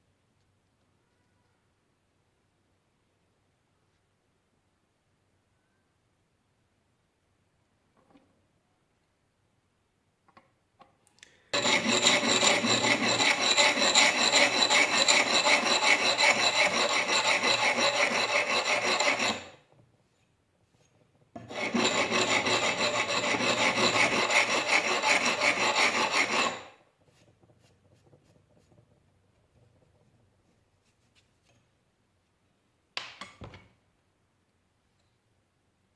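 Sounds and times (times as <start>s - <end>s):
file rasping on steel: 11.6s - 19.7s, 21.4s - 27.4s.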